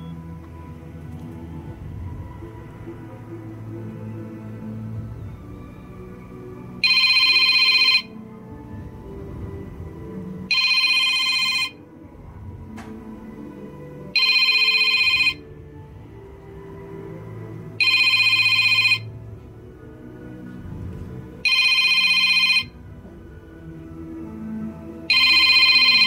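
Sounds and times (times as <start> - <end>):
quiet background music: 0.0 - 26.0
electronic alarm trilling ring tone: 6.8 - 8.2, 10.5 - 11.8, 14.1 - 15.5, 17.8 - 19.1, 21.4 - 22.8, 25.1 - 26.0.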